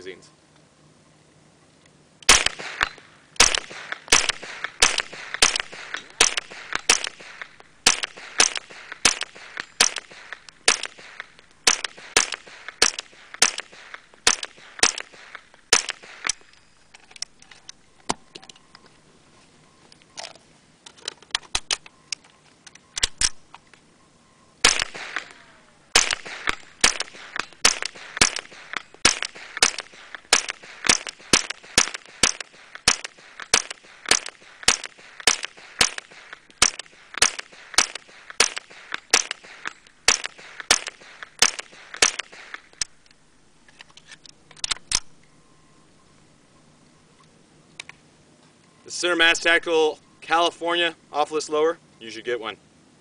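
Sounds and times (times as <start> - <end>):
rifle shots: 2.2 - 16.6, 24.6 - 43.0.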